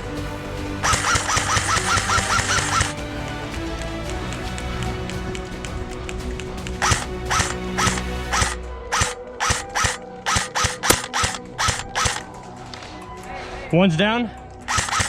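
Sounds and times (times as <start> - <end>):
background music: 0.0 - 15.0
airsoft gun shots: 0.8 - 2.9, 6.8 - 12.3, 14.7 - 15.0.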